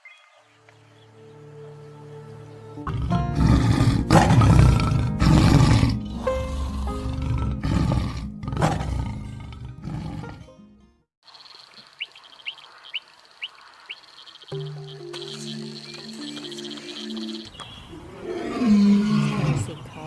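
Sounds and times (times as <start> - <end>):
background music: 0.5 - 11.1, 14.5 - 17.5
large animal roaring: 2.8 - 10.4, 18.0 - 19.7.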